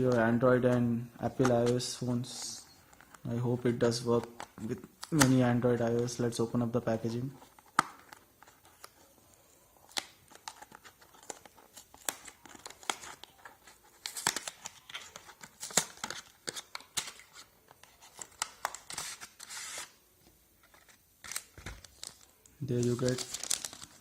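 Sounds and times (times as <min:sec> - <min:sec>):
packaging crinkling rustle: 0:09.8 - 0:20.0, 0:20.6 - 0:24.0.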